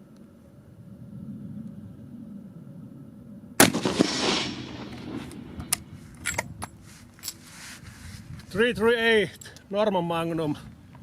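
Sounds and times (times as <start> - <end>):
rifle shot echoing: 3.6 - 6.0.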